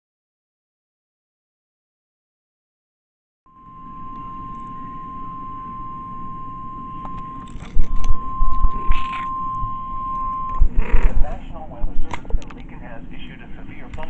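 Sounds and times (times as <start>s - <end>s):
radio warning alarm tone: 3.5s - 12.1s.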